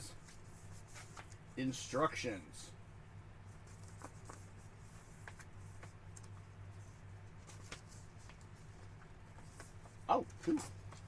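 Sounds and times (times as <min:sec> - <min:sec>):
steady low hum: 0:00.0 - 0:11.0
paper pages rustling: 0:00.2 - 0:01.4, 0:03.6 - 0:11.0.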